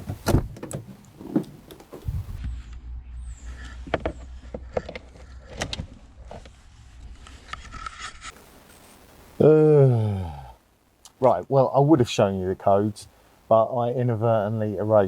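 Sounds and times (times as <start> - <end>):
low hum: 2.0 - 11.0.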